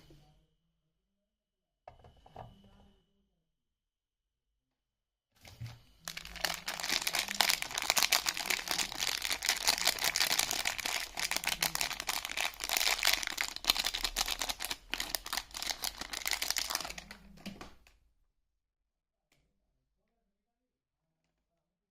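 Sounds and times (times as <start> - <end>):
wrapper crinkling: 6.0 - 17.4.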